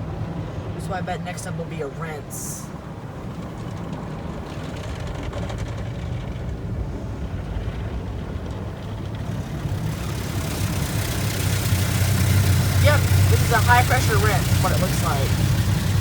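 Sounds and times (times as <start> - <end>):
car wash low rumble: 0.0 - 16.0
water spray hissing on car: 9.3 - 16.0.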